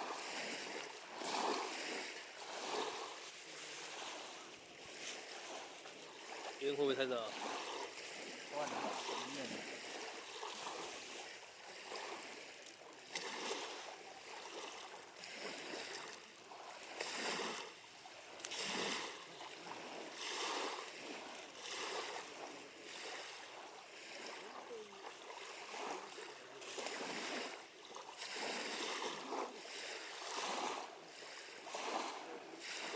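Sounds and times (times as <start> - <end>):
small waves lapping at shore: 0.0 - 32.9.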